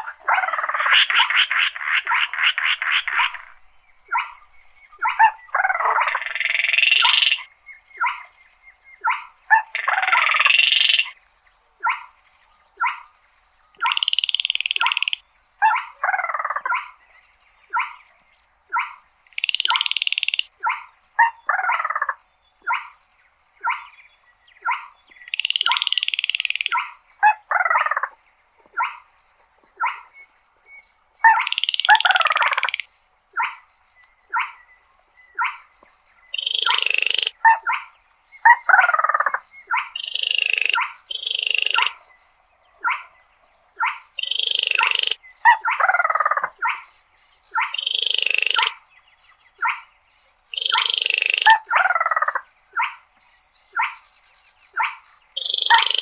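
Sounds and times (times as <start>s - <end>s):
bird dry rattling call: 13.8s - 15.2s, 19.3s - 20.5s, 25.2s - 27.0s, 31.3s - 32.9s, 36.4s - 37.4s, 39.8s - 42.0s, 44.1s - 45.2s, 47.6s - 48.8s, 50.5s - 52.4s, 53.9s - 56.0s.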